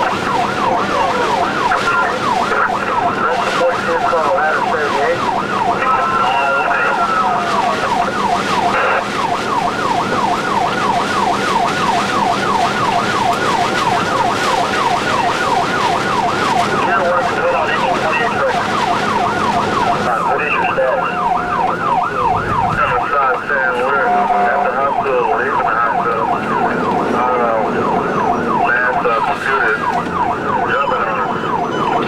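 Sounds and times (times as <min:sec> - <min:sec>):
fire truck siren yelping: 0:00.0 - 0:32.0.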